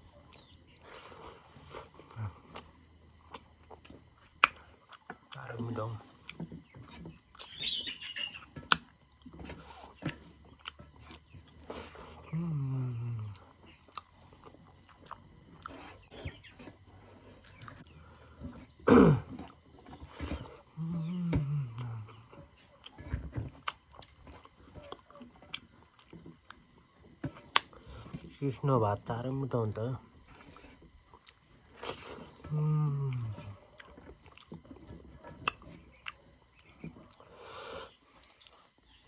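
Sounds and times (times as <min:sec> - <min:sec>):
chewing and lip smacks: 0:00.0 - 0:12.4, 0:13.0 - 0:28.5, 0:30.0 - 0:39.0
wet mouth clicks and smacks: 0:03.8 - 0:05.1, 0:08.6 - 0:11.2, 0:27.5 - 0:28.2
low hum falling in pitch: 0:12.2 - 0:13.5, 0:20.8 - 0:22.4, 0:32.4 - 0:33.6.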